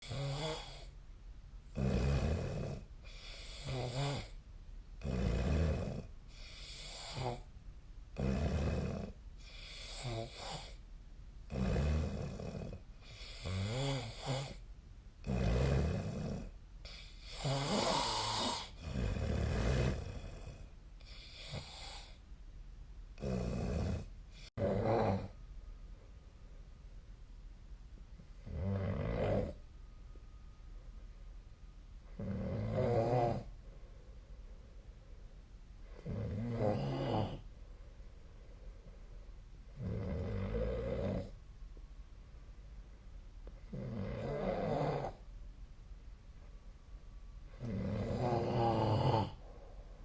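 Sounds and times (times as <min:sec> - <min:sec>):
person snoring: 0:00.0 - 0:00.9, 0:01.7 - 0:04.4, 0:05.0 - 0:07.5, 0:08.2 - 0:10.8, 0:11.5 - 0:14.6, 0:15.2 - 0:22.2, 0:23.2 - 0:25.4, 0:28.4 - 0:29.6, 0:32.2 - 0:33.5, 0:35.9 - 0:37.5, 0:39.8 - 0:41.3, 0:43.7 - 0:45.2, 0:47.6 - 0:49.7.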